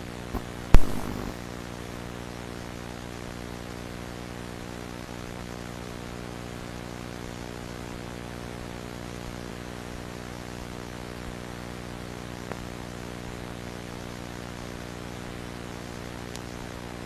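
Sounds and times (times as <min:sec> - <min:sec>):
low electrical buzz: 0:00.0 - 0:02.3
static hiss: 0:00.4 - 0:02.3.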